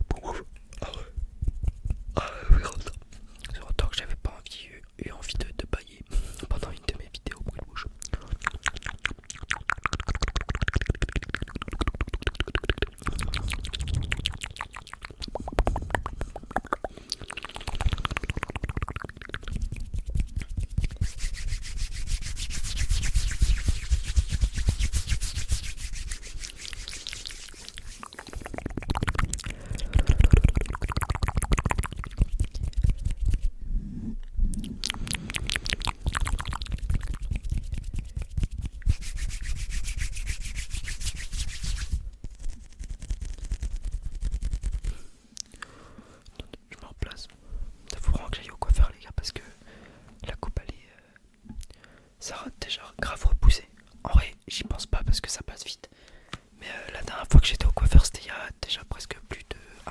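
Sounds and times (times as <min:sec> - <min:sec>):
wet mouth clicking and lip smacking: 0:07.3 - 0:21.4, 0:23.2 - 0:33.5, 0:34.5 - 0:40.6, 0:42.3 - 0:46.7.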